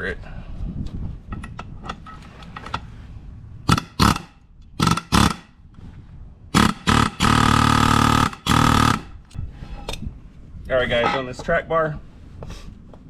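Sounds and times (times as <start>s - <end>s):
pneumatic air hammer firing: 3.7s - 5.6s, 6.5s - 9.2s.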